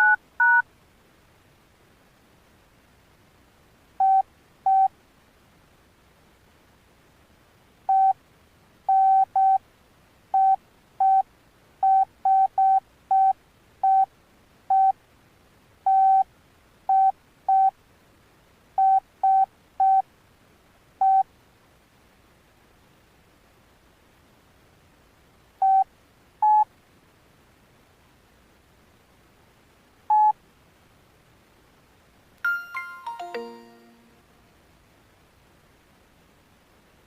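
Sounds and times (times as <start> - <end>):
phone keypad beeps: 0.0 - 0.6, 4.0 - 4.9, 7.9 - 8.2, 8.9 - 9.6, 10.4 - 11.2, 11.8 - 14.1, 14.7 - 14.9, 15.9 - 16.2, 16.9 - 17.7, 18.8 - 20.0, 21.0 - 21.2, 25.6 - 26.6, 30.1 - 30.4.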